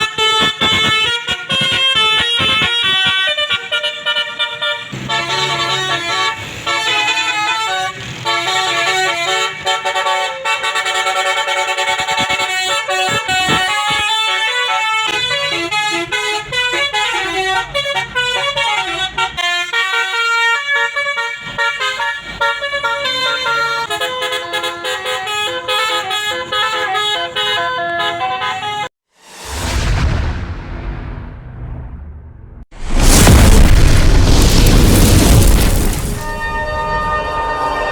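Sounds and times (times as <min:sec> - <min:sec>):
musical air horns playing melody: 0:00.0 - 0:28.9.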